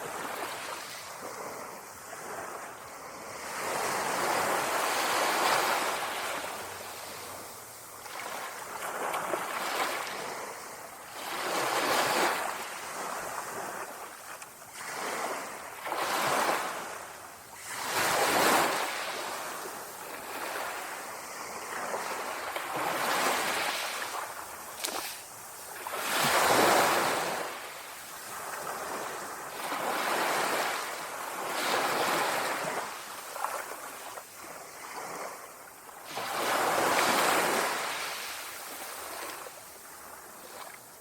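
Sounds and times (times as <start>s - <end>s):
light breeze: 0.0s - 41.0s
small waves lapping on shore: 0.0s - 41.0s.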